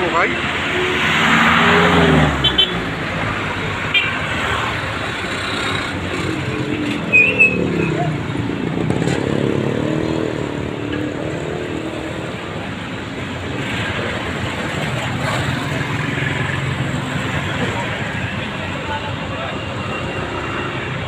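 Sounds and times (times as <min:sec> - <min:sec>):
street traffic noise: 0:00.0 - 0:21.0
vehicle engine passing close by: 0:00.6 - 0:03.7
short high squeak: 0:06.9 - 0:08.1.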